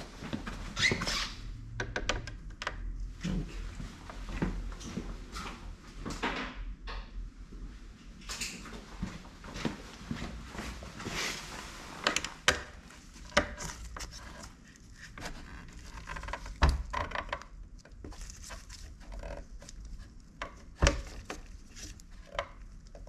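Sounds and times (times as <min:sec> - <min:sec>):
plastic and metal clicks and creaks: 0:01.7 - 0:03.0, 0:12.1 - 0:23.0.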